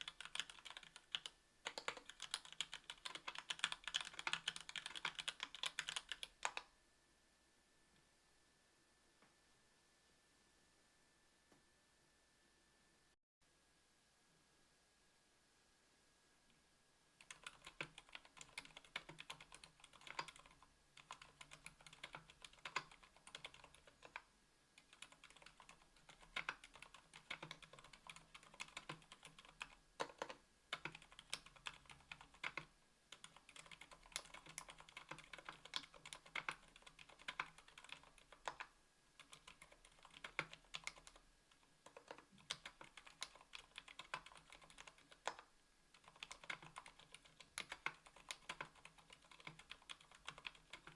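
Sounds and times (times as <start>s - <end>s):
quiet keyboard typing: 0.0s - 6.8s, 17.2s - 50.9s.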